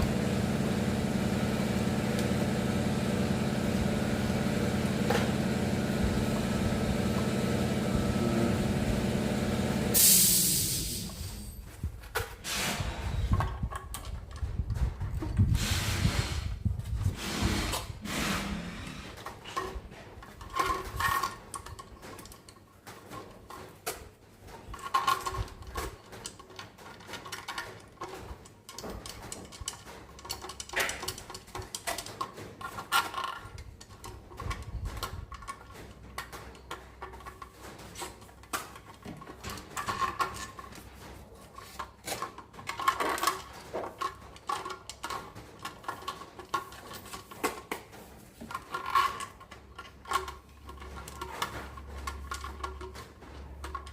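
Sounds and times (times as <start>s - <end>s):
metal parts and tools clinking: 17.7s - 53.9s.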